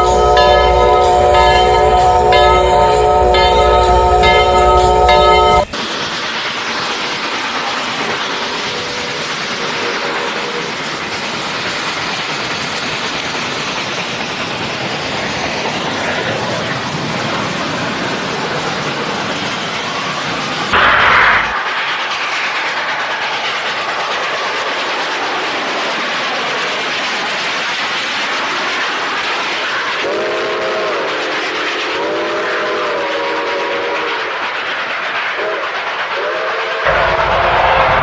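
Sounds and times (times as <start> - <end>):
locomotive horn chord: 0.0 - 5.7
train rumbling along track: 0.0 - 38.0.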